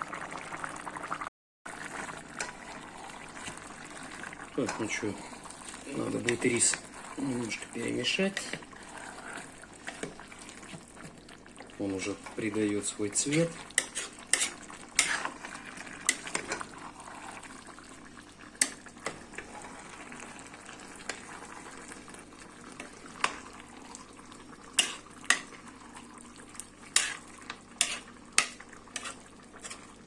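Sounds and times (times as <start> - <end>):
food sizzling: 0.0 - 30.0
utensil clinking and scraping pot: 4.6 - 10.8, 12.1 - 16.9, 24.8 - 25.6, 26.9 - 30.0.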